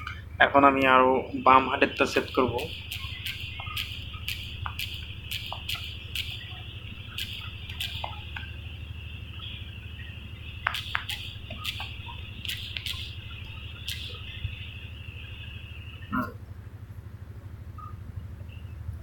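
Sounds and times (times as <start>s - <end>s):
low electrical hum: 0.0s - 19.0s
high hiss: 1.2s - 16.0s
sharp clicks and taps: 2.0s - 8.5s, 10.6s - 14.3s.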